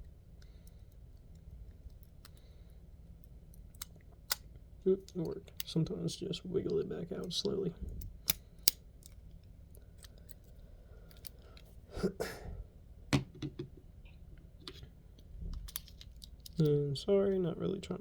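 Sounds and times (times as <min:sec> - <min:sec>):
lock pick clicking: 0:08.0 - 0:09.2.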